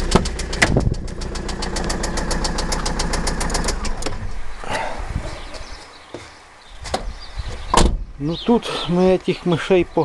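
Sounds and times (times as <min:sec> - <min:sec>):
rapid knocking from engine: 0:00.0 - 0:04.0
engine idling: 0:00.0 - 0:04.5.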